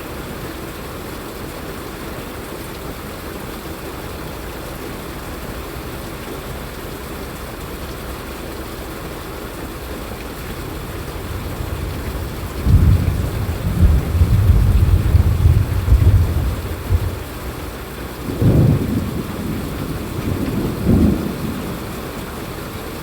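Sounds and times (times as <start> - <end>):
steady rain falling: 0.0 - 23.0
deep rumble of thunder: 10.5 - 23.0.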